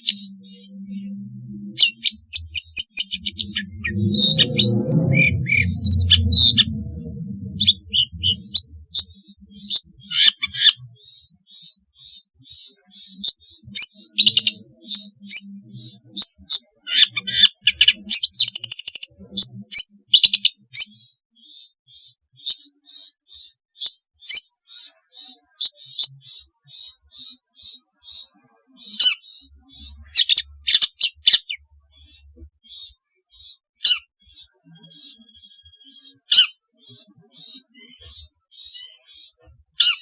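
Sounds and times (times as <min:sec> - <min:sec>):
bird chirping and calling: 0:00.0 - 0:40.0
buzzy bird trill: 0:00.0 - 0:40.0
low rumble: 0:00.3 - 0:10.1.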